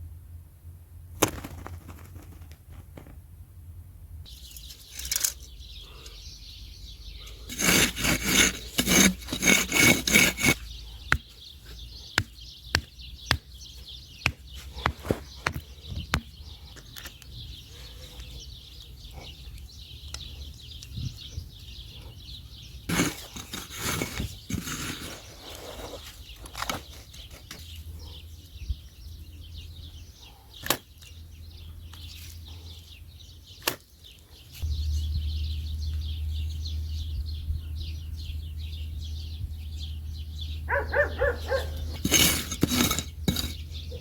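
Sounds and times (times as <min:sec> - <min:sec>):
small birds chirping: 0:04.2 - 0:44.0
low steady hum: 0:34.6 - 0:40.6.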